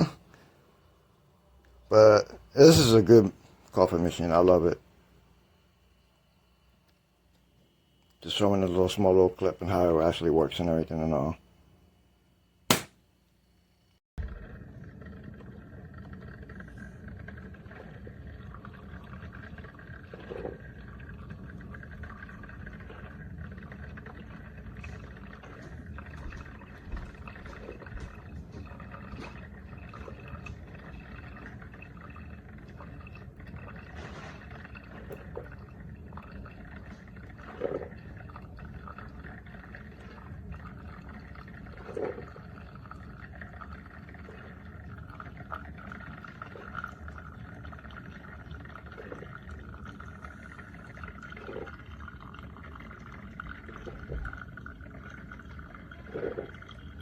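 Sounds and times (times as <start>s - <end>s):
coffee maker gurgles: 0.0s - 11.5s, 14.2s - 57.0s
coffee maker humming: 1.2s - 4.8s, 6.0s - 11.4s, 14.2s - 57.0s
liquid trickling: 14.2s - 57.0s.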